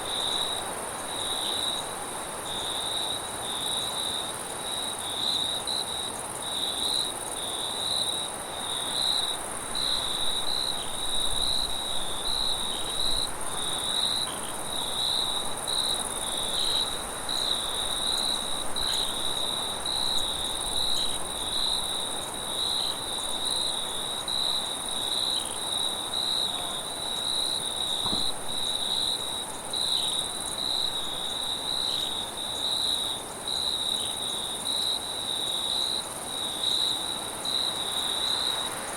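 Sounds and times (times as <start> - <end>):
cricket chirping: 0.0 - 38.9
crickets trilling: 0.0 - 38.9.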